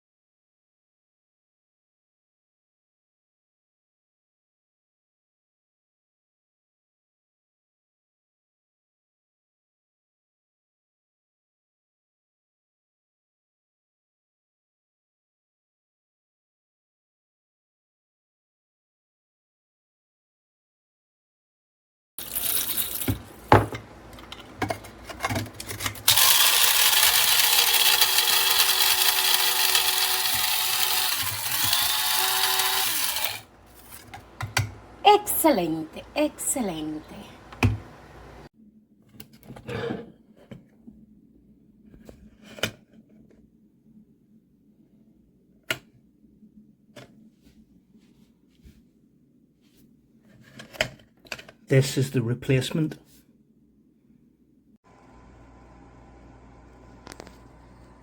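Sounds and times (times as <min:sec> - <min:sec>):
room hum: 0:22.2 - 0:42.3, 0:53.2 - 0:58.0
coffee grinder motor whine: 0:26.0 - 0:33.5, 0:54.9 - 0:58.0.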